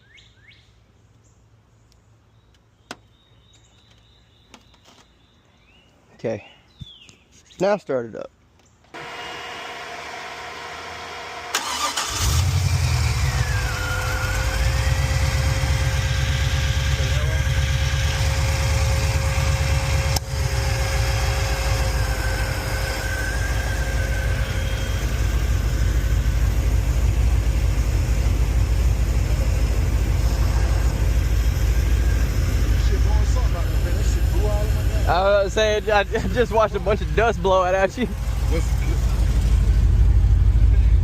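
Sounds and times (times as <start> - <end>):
car engine starting and idling: 9.0 - 41.0.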